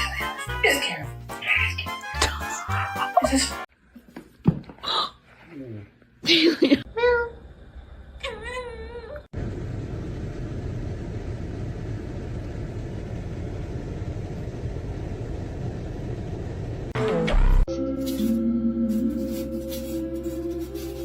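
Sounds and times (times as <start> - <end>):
steady low rumbling noise: 9.4 - 17.7.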